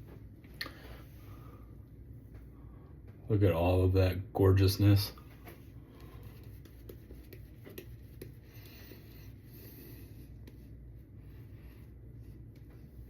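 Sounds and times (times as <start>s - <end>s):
shaving brush rubbing lather: 6.2s - 9.4s.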